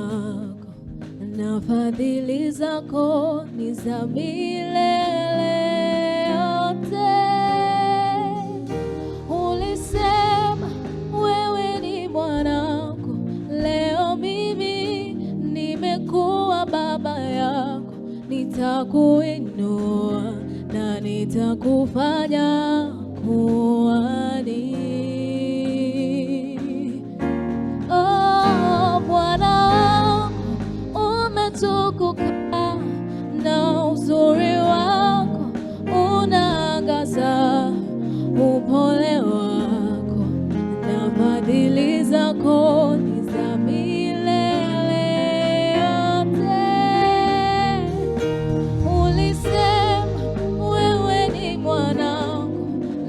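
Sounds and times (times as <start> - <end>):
gospel praise song: 0.0 - 53.0
instrumental accompaniment: 0.0 - 53.0
person singing with vibrato: 0.0 - 53.0.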